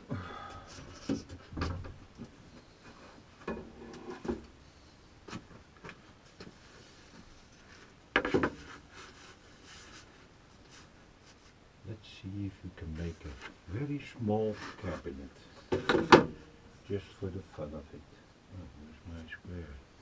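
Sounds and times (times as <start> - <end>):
wood and tools knocking on workbench: 8.2 - 8.7, 15.7 - 16.4.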